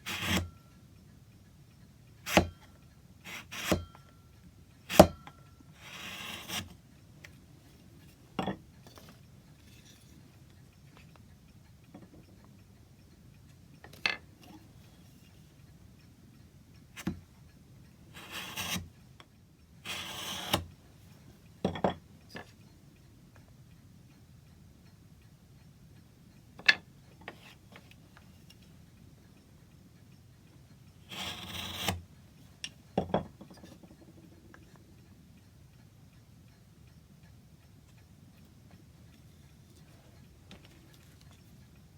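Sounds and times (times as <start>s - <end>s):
scraping on wood: 31.1s - 32.0s.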